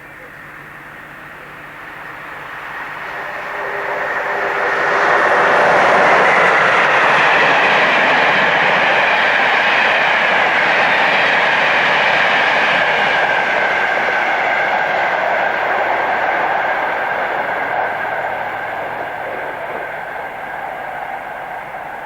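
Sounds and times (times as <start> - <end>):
train passing at speed: 0.0 - 22.0.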